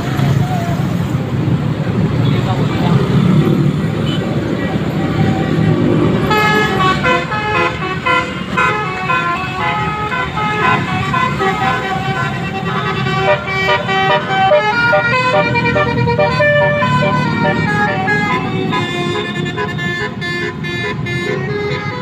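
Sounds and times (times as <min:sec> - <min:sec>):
low rumble of bus: 0:00.0 - 0:22.0
multi-tone bus horn melody: 0:05.1 - 0:22.0.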